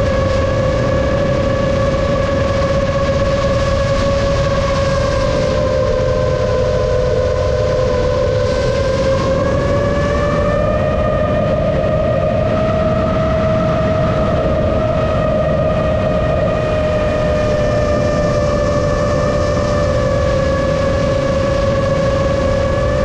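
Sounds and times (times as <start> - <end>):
drone propellers whining: 0.0 - 23.0
wind noise rumble: 0.0 - 23.0.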